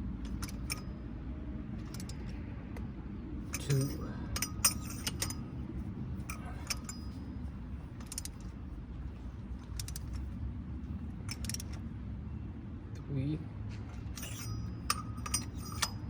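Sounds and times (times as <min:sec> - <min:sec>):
steady low hum: 0:00.0 - 0:16.0
ratchet wrench clicking: 0:00.2 - 0:00.9, 0:01.8 - 0:02.4, 0:03.5 - 0:05.4, 0:06.2 - 0:07.2, 0:08.0 - 0:08.5, 0:09.6 - 0:10.3, 0:11.3 - 0:11.8, 0:14.2 - 0:16.0.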